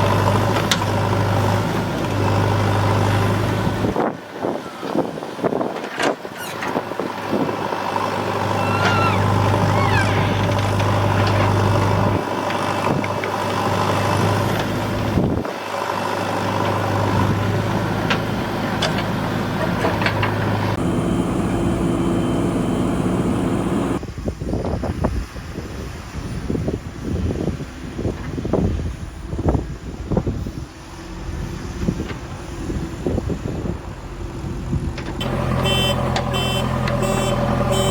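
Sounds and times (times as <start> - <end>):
heavy diesel engines running: 0.0 - 24.6, 29.0 - 37.9
short high squeaks: 8.5 - 10.6.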